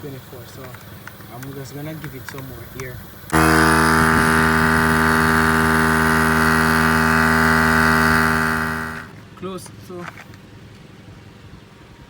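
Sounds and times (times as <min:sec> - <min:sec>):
air compressor running: 0:00.0 - 0:09.1.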